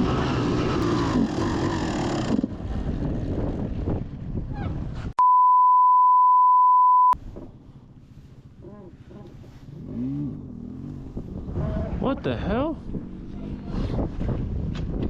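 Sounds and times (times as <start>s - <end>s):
wind noise on microphone: 2.2s - 5.2s, 10.9s - 15.0s
censor bleep: 5.2s - 7.2s.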